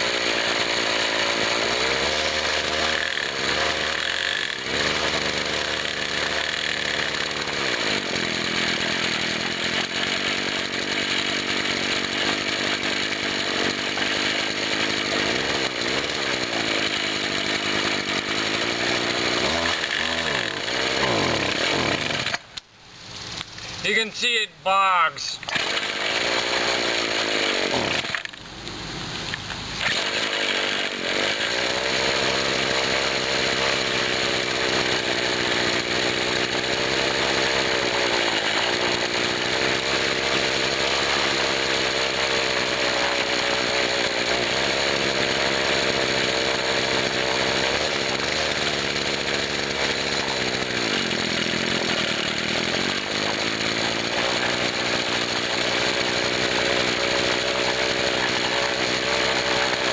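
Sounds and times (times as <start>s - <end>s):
string trimmer engine bogging down: 25.4s - 59.9s.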